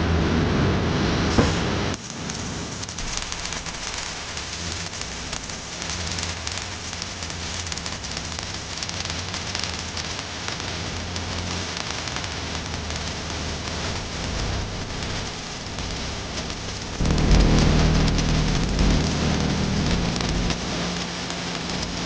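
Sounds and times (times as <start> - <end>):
welding arc crackling: 1.5 - 22.0
low electrical hum: 12.6 - 22.0.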